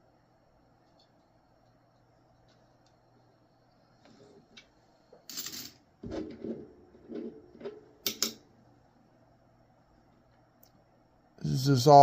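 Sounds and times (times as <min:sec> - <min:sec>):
coins clicking and tapping: 0:05.3 - 0:05.8, 0:08.0 - 0:08.4
coins rustling: 0:05.3 - 0:05.8.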